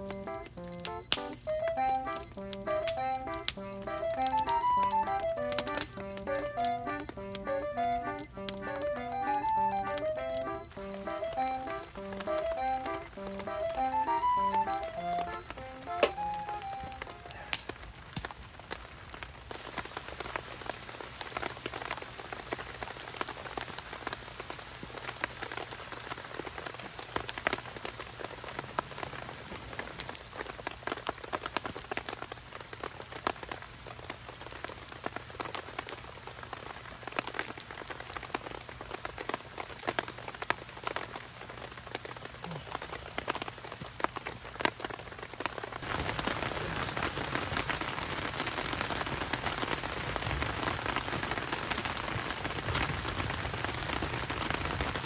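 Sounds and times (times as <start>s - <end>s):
rain falling: 0.0s - 55.0s
raindrops striking close by: 0.0s - 55.0s.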